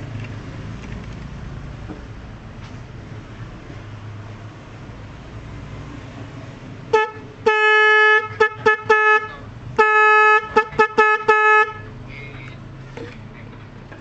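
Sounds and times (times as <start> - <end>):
electric car horn toots: 6.9 - 11.9.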